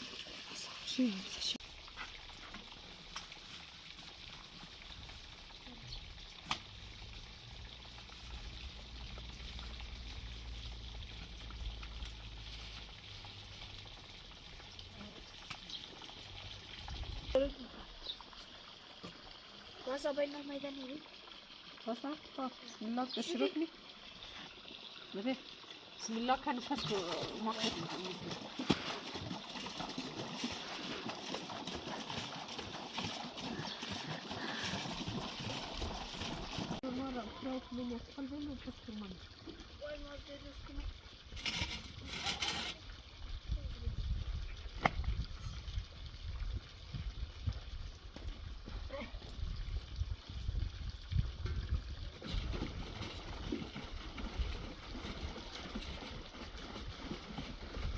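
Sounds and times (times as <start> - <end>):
liquid simmering bubbling: 1.6 - 19.9, 23.1 - 41.4.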